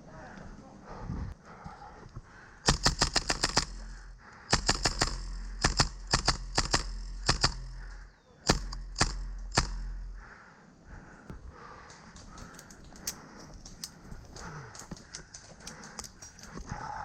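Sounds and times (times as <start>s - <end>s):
airsoft gun firing: 2.7s - 10.2s.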